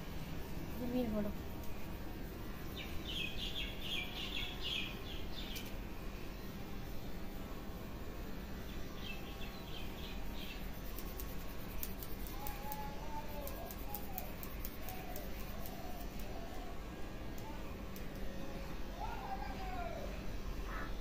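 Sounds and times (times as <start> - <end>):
birds chirping: 2.7 - 5.7.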